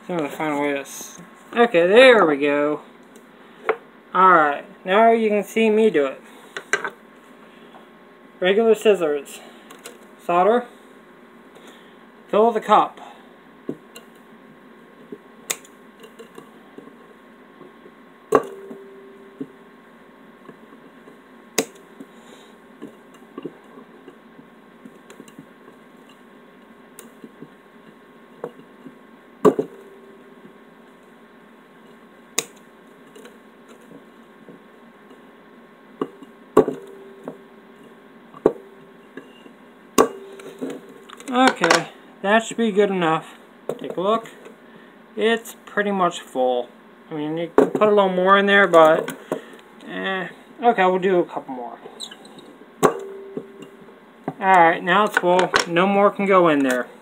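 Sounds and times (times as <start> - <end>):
short ringing tone: 18.4 - 19.7, 36.2 - 37.7, 40.1 - 41.0, 53.0 - 53.9.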